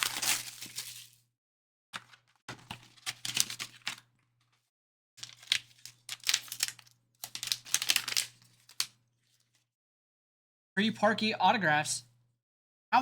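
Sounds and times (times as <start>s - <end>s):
plastic packaging crinkling: 0.0s - 1.2s, 2.0s - 4.0s, 5.2s - 9.4s.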